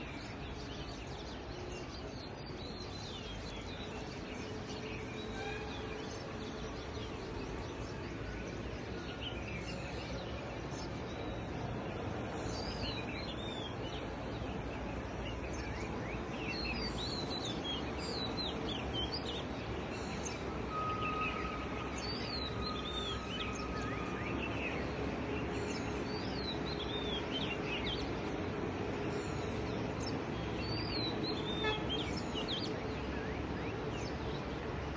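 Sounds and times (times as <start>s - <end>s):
outdoor background rush: 0.0s - 34.9s
birds chirping and calling: 12.2s - 34.4s.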